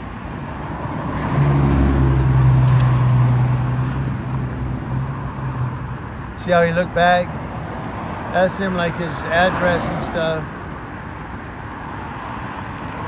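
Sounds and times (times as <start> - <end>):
vehicle passing by: 0.6 - 5.9, 7.2 - 10.6.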